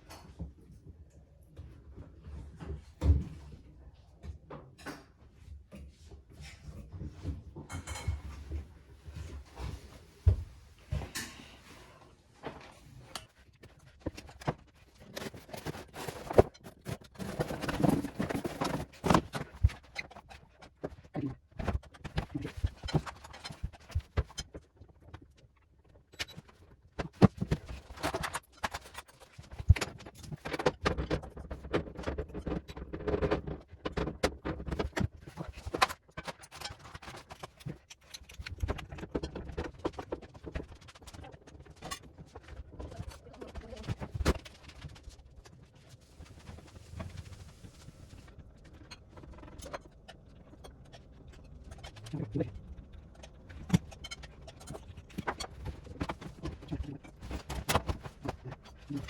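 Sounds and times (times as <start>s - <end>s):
clicks knocks and scraping: 12.4s - 59.0s.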